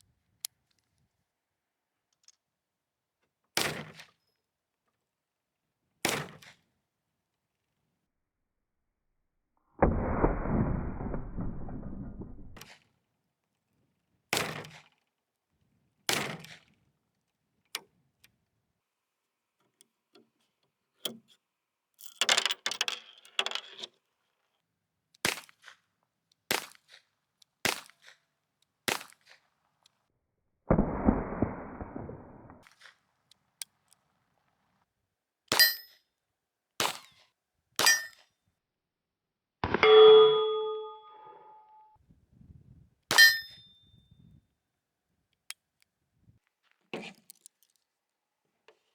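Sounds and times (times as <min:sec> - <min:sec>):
gunshot: 0:09.8 - 0:12.6, 0:30.7 - 0:32.6
ringing metal clang: 0:37.8 - 0:38.2, 0:39.7 - 0:41.9, 0:43.1 - 0:44.0.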